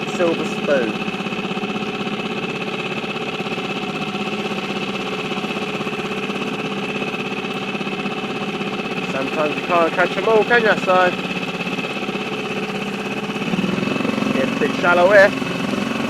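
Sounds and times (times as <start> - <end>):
outboard motor running: 0.0 - 16.0.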